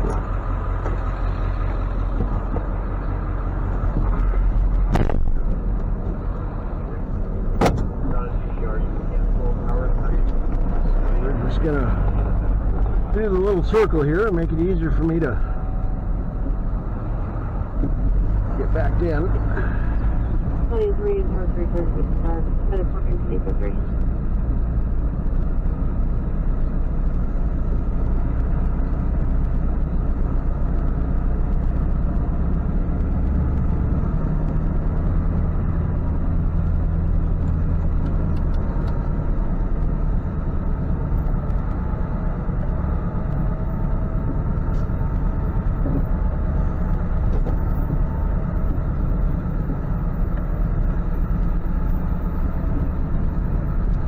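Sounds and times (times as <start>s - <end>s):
road noise: 0.0s - 54.0s
truck engine running: 0.0s - 54.0s.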